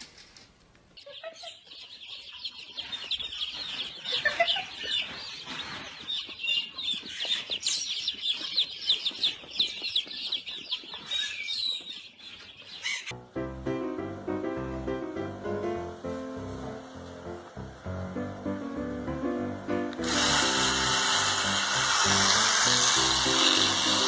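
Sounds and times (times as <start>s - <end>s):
birds chirping: 1.0s - 13.2s
music: 13.1s - 24.0s.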